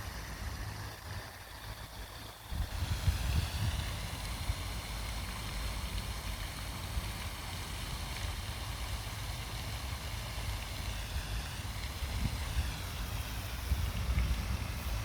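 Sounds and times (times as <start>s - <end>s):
water rushing: 0.0s - 15.0s
wind buffeting microphone: 2.5s - 4.8s, 11.7s - 15.0s.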